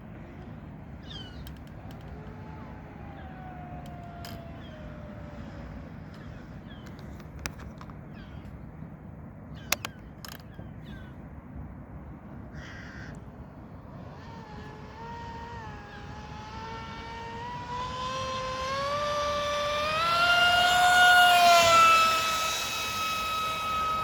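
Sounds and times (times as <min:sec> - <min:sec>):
rc speedboat motor whining: 0:01.0 - 0:06.4, 0:13.7 - 0:24.0.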